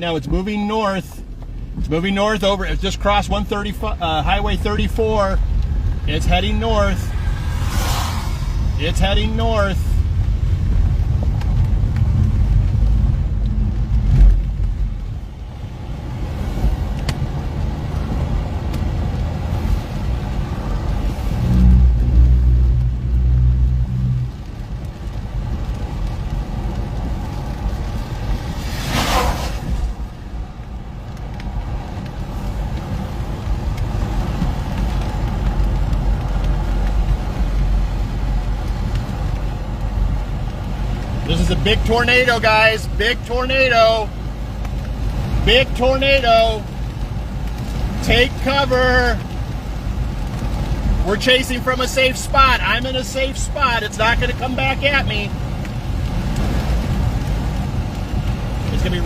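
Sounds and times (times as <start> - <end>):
car rumbling: 0.0 - 59.0
short whoosh: 6.7 - 10.1, 28.3 - 30.4.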